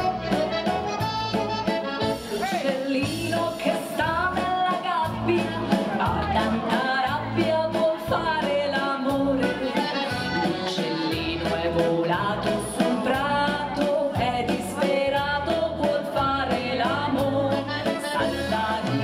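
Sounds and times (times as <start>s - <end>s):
accordion waltz melody: 0.0s - 2.4s, 9.4s - 11.6s, 17.2s - 19.0s
repeating bass line: 0.0s - 2.4s, 5.1s - 19.0s.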